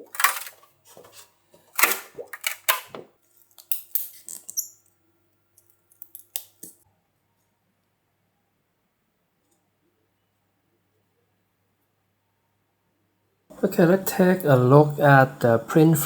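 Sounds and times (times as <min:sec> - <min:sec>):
faint steady hum: 0:06.9 - 0:16.0.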